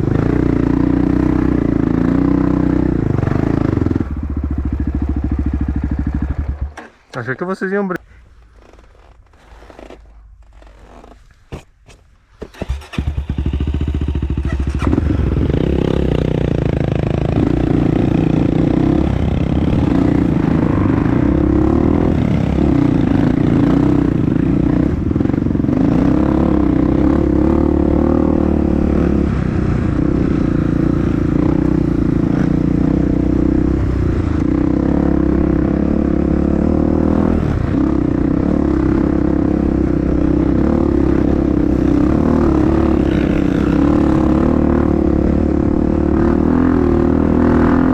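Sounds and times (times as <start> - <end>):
dirt bike engine revving: 0.0 - 7.0, 12.5 - 47.9
clatter and scraping over rough ground: 8.0 - 12.8.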